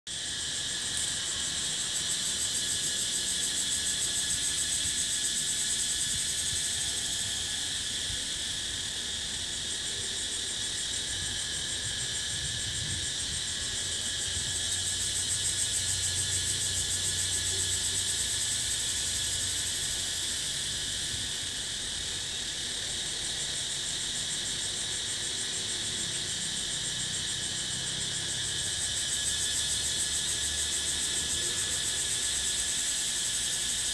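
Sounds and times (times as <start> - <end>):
cicadas calling: 0.1 - 33.9.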